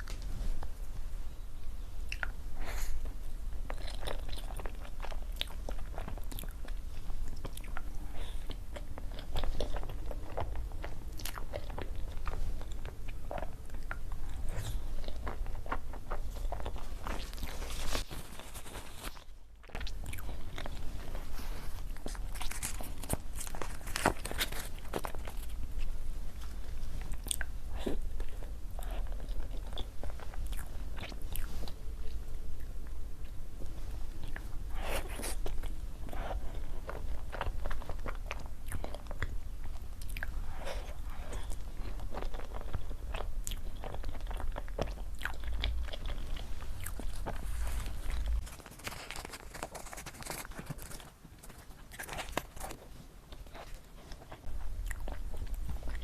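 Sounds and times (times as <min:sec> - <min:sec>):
low background hum: 0:00.0 - 0:56.0.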